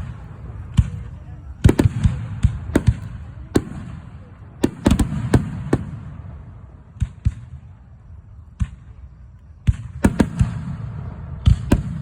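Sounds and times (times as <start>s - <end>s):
fireworks bangs: 0.0s - 12.0s
low rumbling echo: 0.0s - 12.0s.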